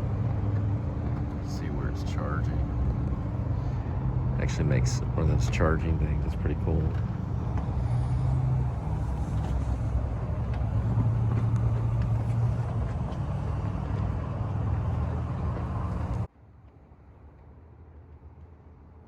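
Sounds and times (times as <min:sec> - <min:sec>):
low mechanical hum: 0:00.0 - 0:16.3
noisy rush: 0:00.0 - 0:16.3.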